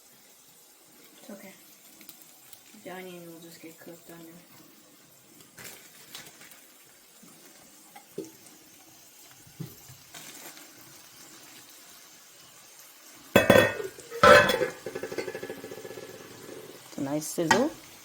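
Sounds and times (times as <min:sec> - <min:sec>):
cookware clinking: 0:13.4 - 0:16.8, 0:17.4 - 0:17.8
metal cookware clattering: 0:13.4 - 0:16.8, 0:17.4 - 0:17.8.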